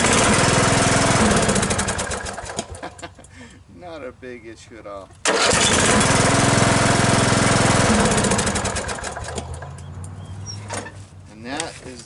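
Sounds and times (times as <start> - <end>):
engine cranking on starter: 0.0 - 2.9, 5.2 - 9.8.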